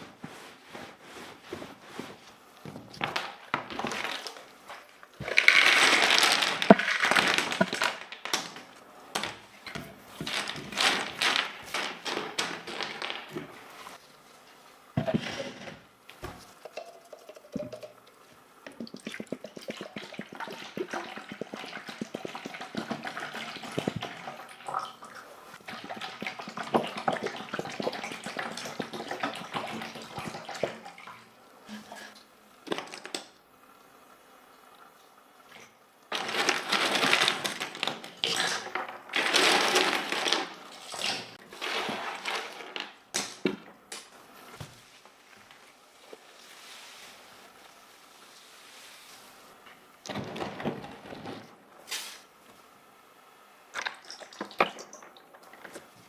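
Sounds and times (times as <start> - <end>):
scrubbing: 0.0 - 14.2, 18.6 - 24.6
water running and splashing: 16.2 - 31.6.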